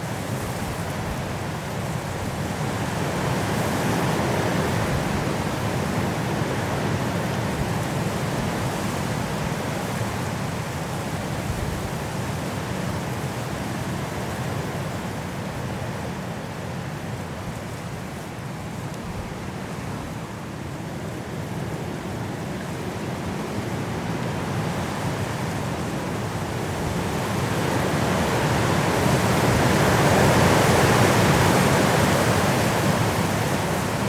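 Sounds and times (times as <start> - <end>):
high wind through trees: 0.0 - 34.0.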